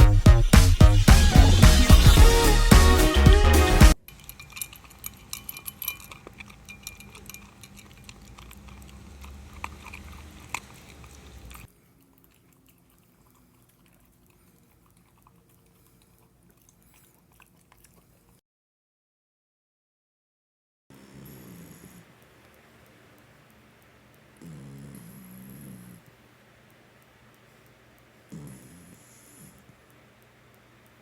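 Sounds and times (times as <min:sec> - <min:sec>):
background music: 0:00.0 - 0:04.0
dog chewing with wet clicks: 0:04.0 - 0:18.4, 0:21.9 - 0:31.0.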